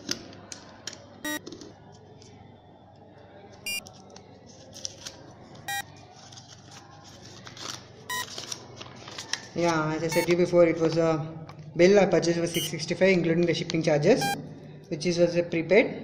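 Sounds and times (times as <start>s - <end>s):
paper packaging rustling: 3.8s - 10.1s.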